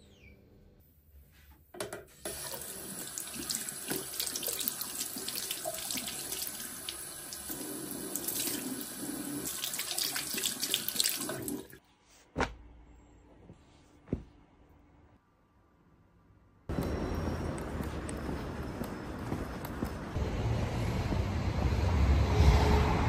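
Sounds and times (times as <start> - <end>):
tap water splashing into sink: 2.3 - 7.6.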